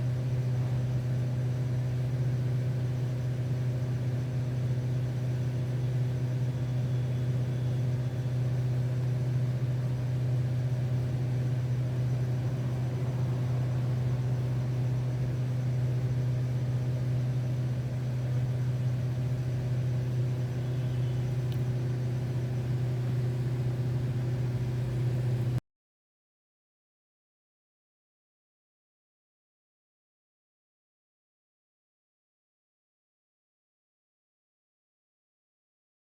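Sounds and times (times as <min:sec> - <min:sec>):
steady low hum: 0:00.0 - 0:25.6.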